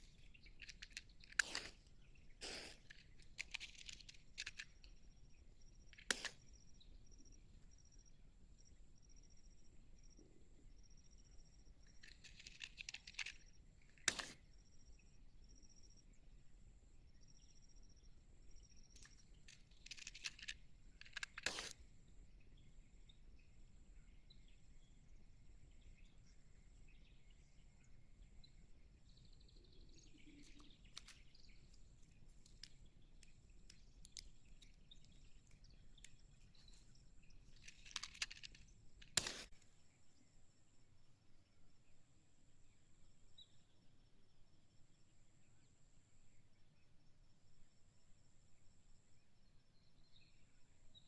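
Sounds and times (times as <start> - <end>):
faint outdoor background: 0.0 - 51.0
short scratchy burst: 2.4 - 2.9, 39.2 - 39.5
light clicks: 30.3 - 39.7.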